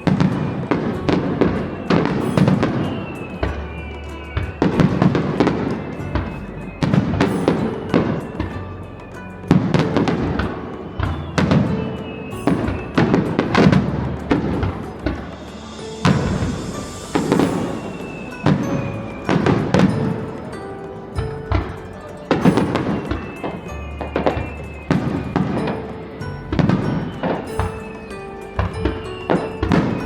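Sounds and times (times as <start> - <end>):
fireworks bangs and crackles: 0.0 - 30.0
music playing: 0.0 - 30.0.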